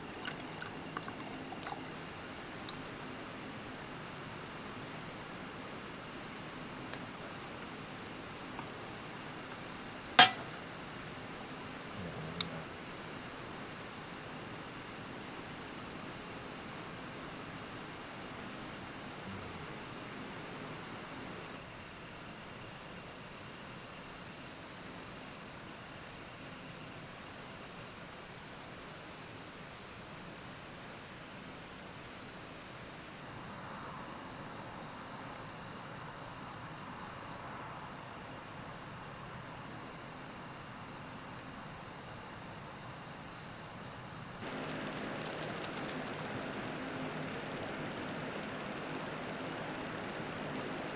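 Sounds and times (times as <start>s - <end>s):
insects trilling chorus: 0.0s - 14.4s, 44.4s - 50.9s.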